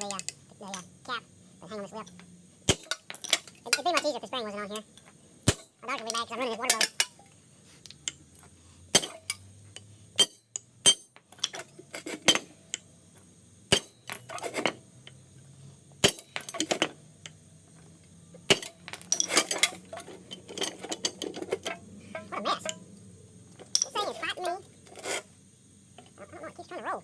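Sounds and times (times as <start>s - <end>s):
rattling metal clinks: 18.5s - 22.9s, 23.5s - 25.2s.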